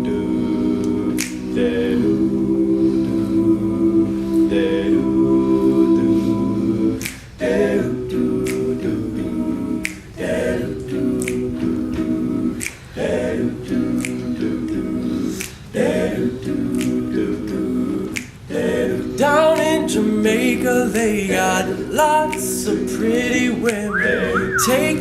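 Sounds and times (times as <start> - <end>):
a cappella group singing chords: 0.0 - 25.0
finger snaps: 0.8 - 1.5, 7.0 - 7.4, 8.4 - 8.8, 9.8 - 11.6, 12.6 - 13.0, 13.9 - 15.8, 16.7 - 18.5, 23.6 - 25.0.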